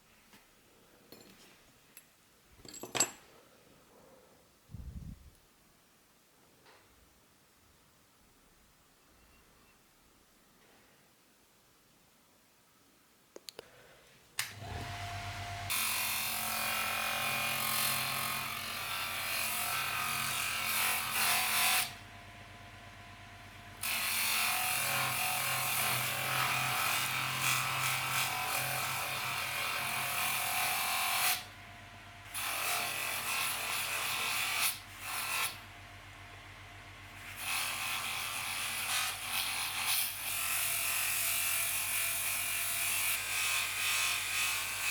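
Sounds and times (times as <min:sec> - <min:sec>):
power tool motor buzzing: 0:14.4 - 0:22.0, 0:23.7 - 0:31.6.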